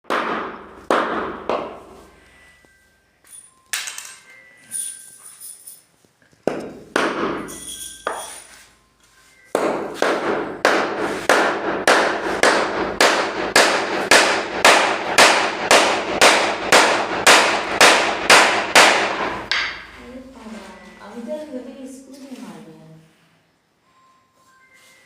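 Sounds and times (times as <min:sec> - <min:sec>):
hammer strikes on wood: 0:00.0 - 0:01.9, 0:06.4 - 0:07.5, 0:09.5 - 0:19.8.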